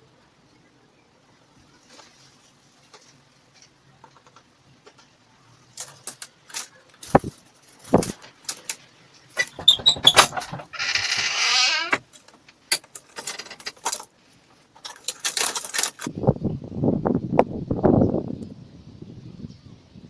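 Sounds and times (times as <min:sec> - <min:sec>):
knocks and rattles on plastic trap: 0:09.4 - 0:11.3.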